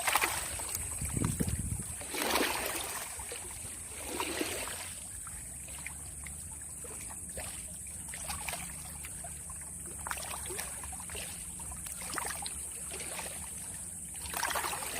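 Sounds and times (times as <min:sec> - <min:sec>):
water lapping at shore: 0:00.0 - 0:14.9
steady low rumble: 0:00.3 - 0:02.1.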